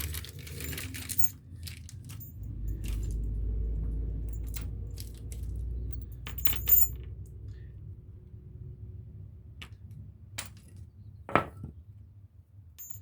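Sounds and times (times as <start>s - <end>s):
small metal parts clinking: 0.0s - 7.3s, 10.4s - 10.9s, 12.8s - 13.0s.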